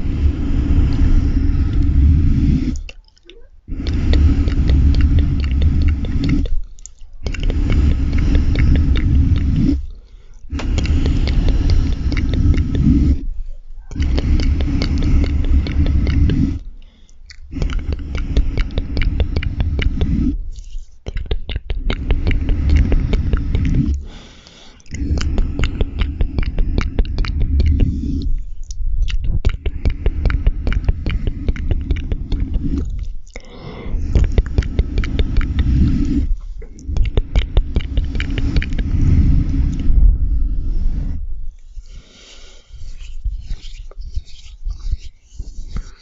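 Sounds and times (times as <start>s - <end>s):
chewing marshmallows: 2.7s - 13.3s, 13.9s - 24.2s, 24.8s - 38.9s.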